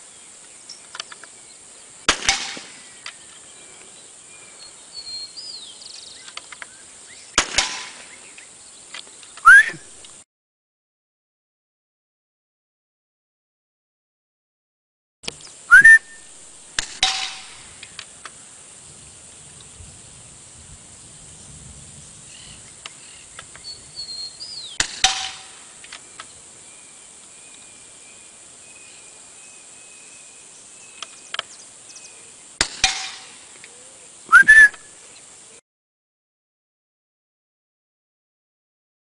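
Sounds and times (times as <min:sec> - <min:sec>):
suppressed rifle shots: 0:02.1 - 0:02.8, 0:07.4 - 0:08.2, 0:24.8 - 0:25.6, 0:32.6 - 0:33.3.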